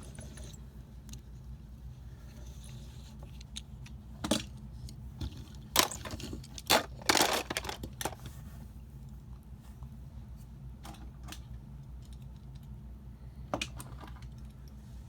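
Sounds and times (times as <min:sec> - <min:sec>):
small objects clicking and rattling: 0:05.7 - 0:08.2.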